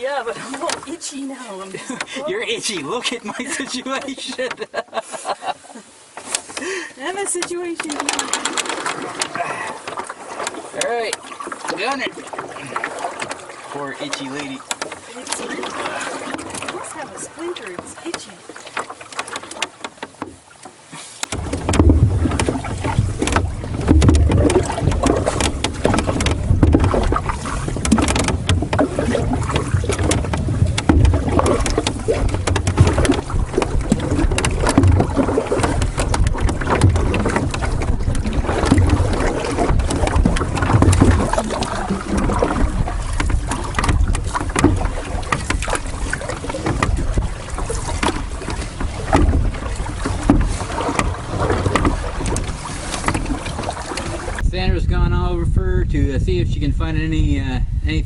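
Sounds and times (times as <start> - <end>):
lake water splashing: 0.0 - 55.3
wind buffeting the microphone: 21.3 - 58.0.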